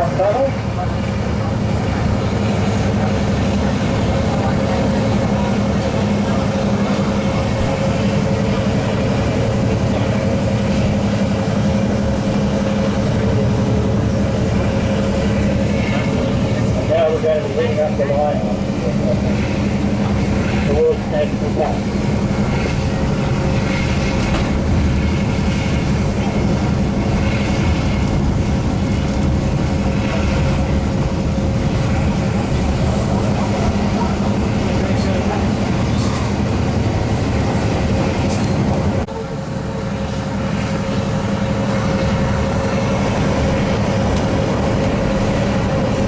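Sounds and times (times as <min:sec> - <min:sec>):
diesel locomotive engine droning: 0:00.0 - 0:46.0
train running noise: 0:00.0 - 0:46.0.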